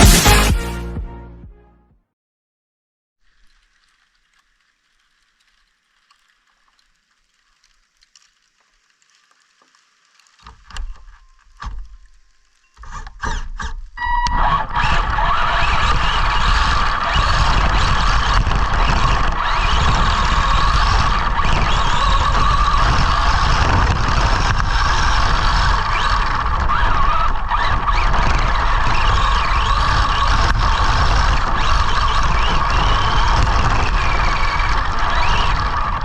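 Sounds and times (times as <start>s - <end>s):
loud rushing noise: 0.0s - 0.8s
electric motor whine: 14.0s - 27.3s.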